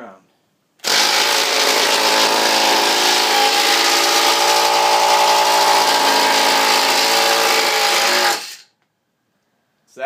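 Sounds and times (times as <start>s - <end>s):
impact driver running: 0.8s - 8.6s.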